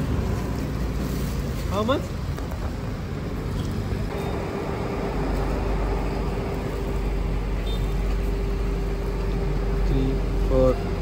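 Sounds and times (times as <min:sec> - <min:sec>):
vehicle engine rumble: 0:00.0 - 0:11.0
steady hum: 0:04.1 - 0:11.0.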